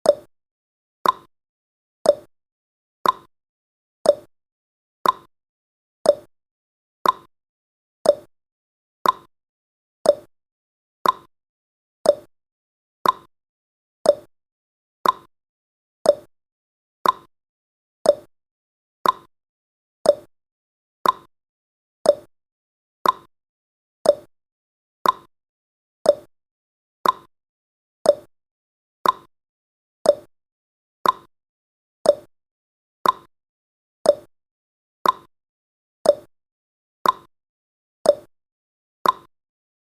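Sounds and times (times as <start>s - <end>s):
clock ticking: 3.0s - 3.3s, 5.0s - 5.3s, 7.0s - 7.3s, 9.0s - 9.3s, 11.0s - 11.3s, 13.0s - 13.3s, 15.0s - 15.3s, 16.1s - 16.3s, 17.0s - 17.3s, 18.1s - 18.3s, 19.0s - 19.3s, 21.0s - 21.3s, 22.1s - 22.3s, 23.0s - 23.3s, 24.0s - 24.3s, 25.0s - 25.3s, 26.1s - 26.3s, 27.0s - 27.3s, 28.1s - 28.3s, 29.0s - 29.3s, 30.1s - 30.3s, 31.0s - 31.3s, 32.1s - 32.3s, 33.0s - 33.3s, 34.1s - 34.3s, 35.0s - 35.3s, 36.1s - 36.3s, 37.0s - 37.3s, 38.1s - 38.3s, 39.0s - 39.3s.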